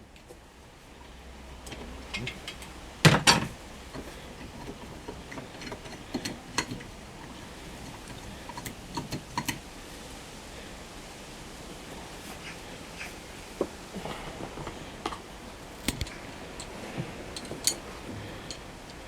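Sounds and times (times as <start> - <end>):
tools clicking and clinking: 15.8 - 19.0.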